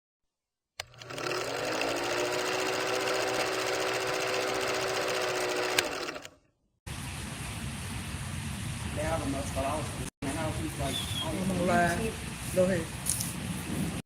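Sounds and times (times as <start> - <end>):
small electric motor whirring: 0.8 - 6.4.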